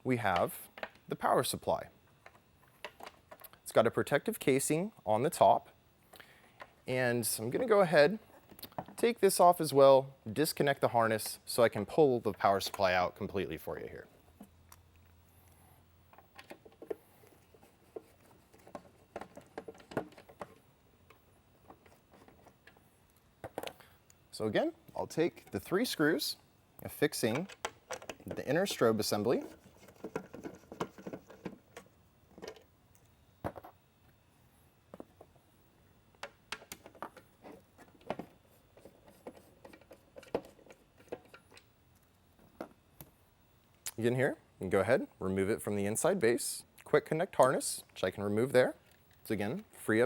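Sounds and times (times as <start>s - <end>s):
plastic parts clicking and tapping: 17.9s - 22.8s, 27.3s - 28.5s, 29.8s - 33.7s
plastic parts knocking: 29.8s - 32.6s.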